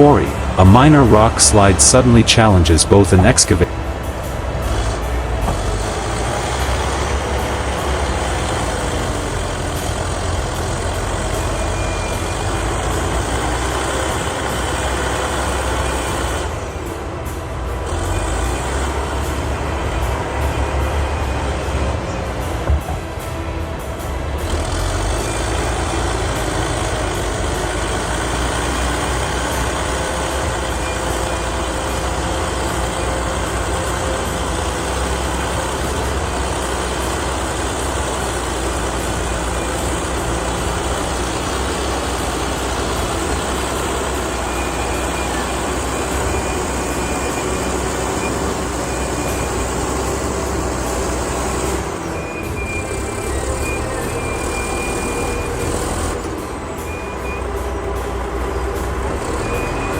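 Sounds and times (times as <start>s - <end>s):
construction machinery engines: 0.0s - 59.9s.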